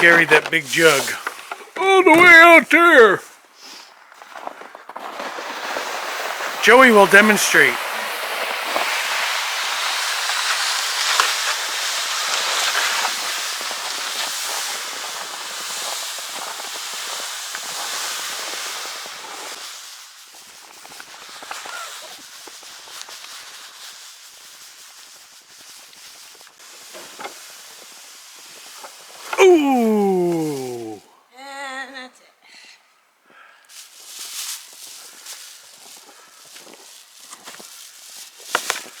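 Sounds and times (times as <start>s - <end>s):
sled dragged across snow: 0.0s - 29.3s.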